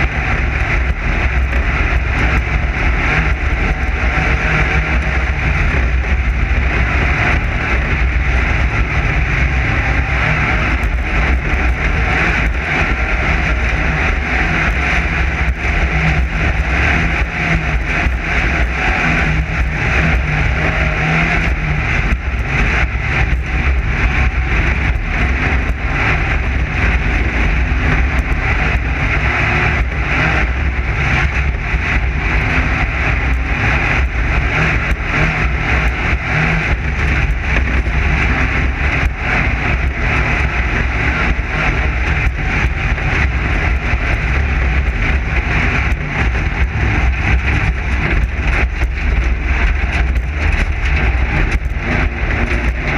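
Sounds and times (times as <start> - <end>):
race car engine drone: 0.0 - 52.9.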